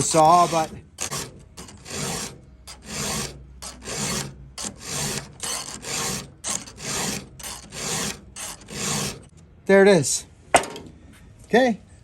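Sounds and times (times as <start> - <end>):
file rasping on saw chain: 0.0 - 9.3.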